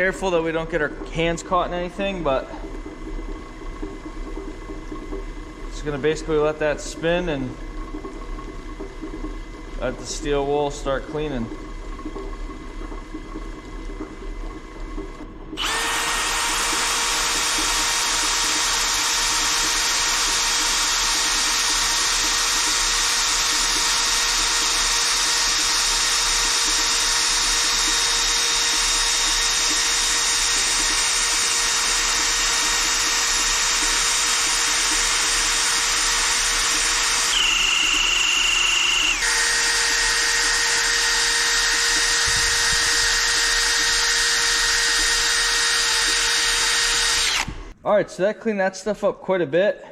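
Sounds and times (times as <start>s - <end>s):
lathe motor running: 15.5s - 47.8s.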